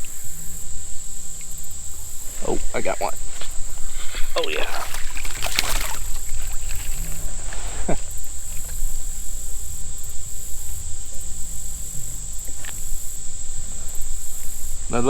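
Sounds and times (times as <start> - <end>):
insects droning: 0.0 - 15.0.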